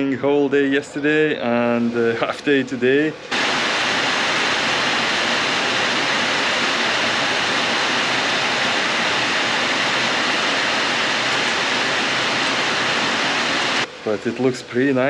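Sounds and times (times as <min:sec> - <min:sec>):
falling water rushing: 0:03.1 - 0:14.6.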